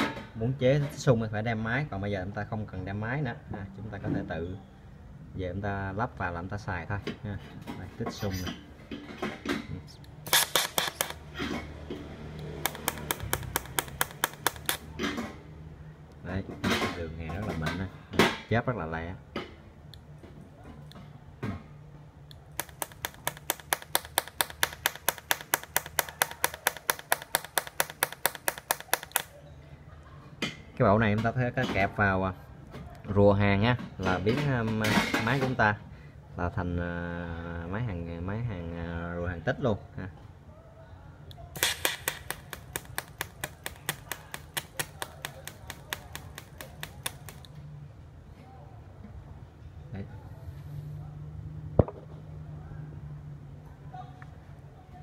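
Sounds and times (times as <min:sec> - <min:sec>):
welder pulsing clicks: 0:10.3 - 0:11.2, 0:12.4 - 0:14.8, 0:22.5 - 0:29.3, 0:41.6 - 0:47.5.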